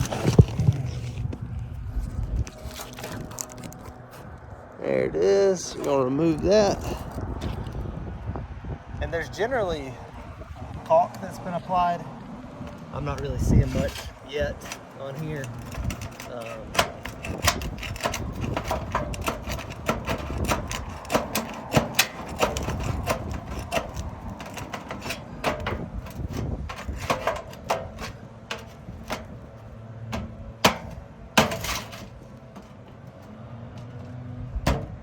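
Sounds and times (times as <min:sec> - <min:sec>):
tool scraping: 0:00.0 - 0:01.4, 0:02.0 - 0:04.4, 0:05.8 - 0:07.7, 0:12.6 - 0:34.1
hand tools clicking and knocking: 0:12.7 - 0:33.3.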